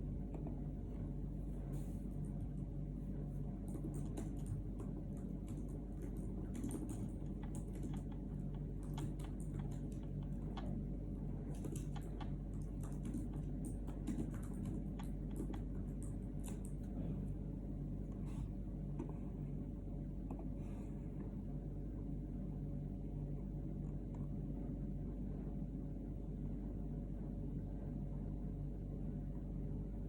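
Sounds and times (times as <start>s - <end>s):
steady low hum: 0.0s - 30.0s
typing on a keyboard: 3.6s - 10.8s, 11.5s - 16.9s.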